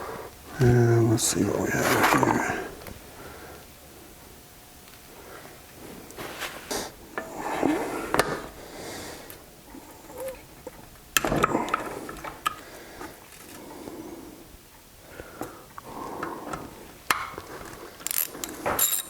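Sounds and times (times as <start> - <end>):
metal parts clanking and scraping: 18.0 - 19.0.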